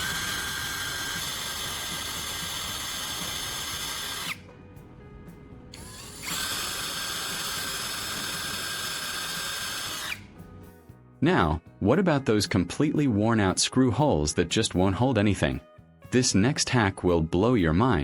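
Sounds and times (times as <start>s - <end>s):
electric drill whining: 0.0s - 4.5s, 5.8s - 10.4s.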